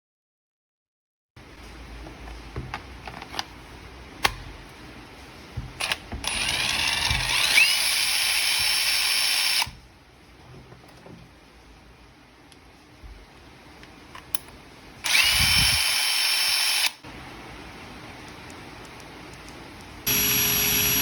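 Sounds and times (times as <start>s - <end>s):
impact driver motor whine: 5.8s - 9.8s, 15.1s - 17.0s, 20.1s - 21.0s.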